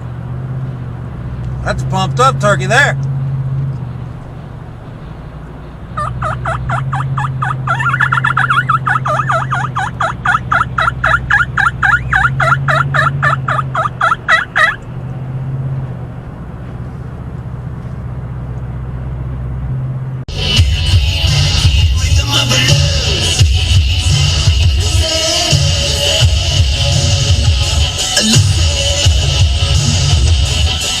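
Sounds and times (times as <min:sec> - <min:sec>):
car humming on road: 0:00.0 - 0:31.0
turkey call notes: 0:06.0 - 0:14.9
music: 0:20.3 - 0:31.0.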